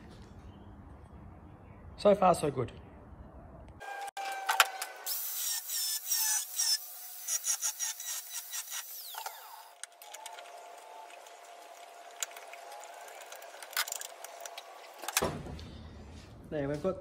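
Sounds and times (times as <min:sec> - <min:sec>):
power tool cutting sheet metal: 0:03.8 - 0:09.8.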